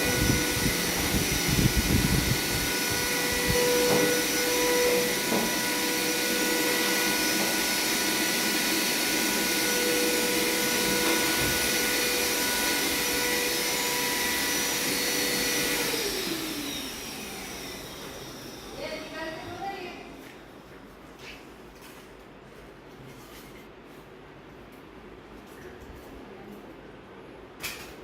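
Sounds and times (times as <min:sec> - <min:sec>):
electric motor whining: 0:00.0 - 0:19.4.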